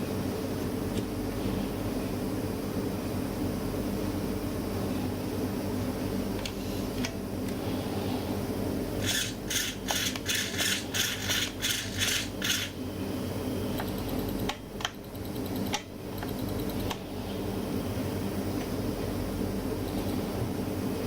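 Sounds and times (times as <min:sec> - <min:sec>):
steady low hum: 0:00.0 - 0:21.0
rc car motor rasping bursts: 0:09.0 - 0:12.8.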